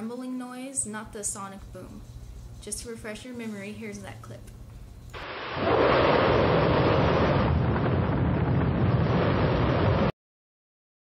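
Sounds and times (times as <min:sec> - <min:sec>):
loud rumbling roar: 0:05.2 - 0:10.1.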